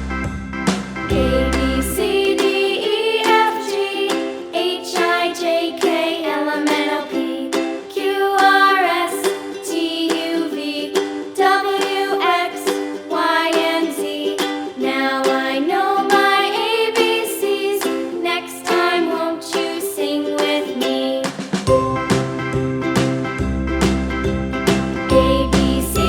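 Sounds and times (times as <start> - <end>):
bass notes: 0.0 - 2.3, 21.7 - 26.0
plucked strings melody: 0.0 - 26.0.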